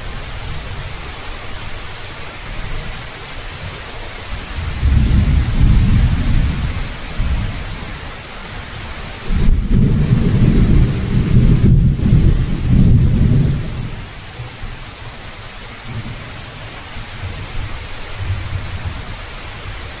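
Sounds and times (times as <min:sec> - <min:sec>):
heavy rain falling: 0:00.0 - 0:20.0
thunder rumbling: 0:04.5 - 0:08.0, 0:09.2 - 0:14.1.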